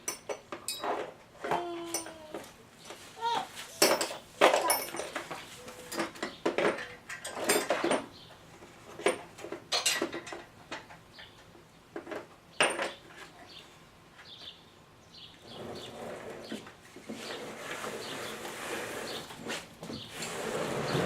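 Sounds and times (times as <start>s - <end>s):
metal tools clinking: 0.0s - 1.1s, 1.8s - 2.5s, 3.8s - 8.1s.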